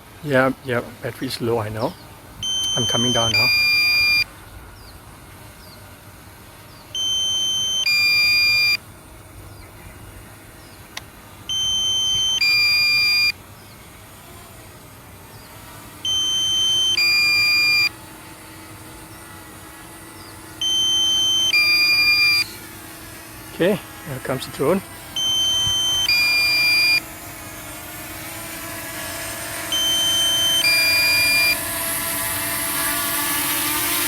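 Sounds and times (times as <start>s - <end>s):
two-tone warning beep: 2.4s - 4.3s, 7.0s - 8.8s, 11.5s - 13.4s, 16.1s - 17.9s, 20.6s - 22.5s, 25.2s - 27.1s, 29.7s - 31.6s.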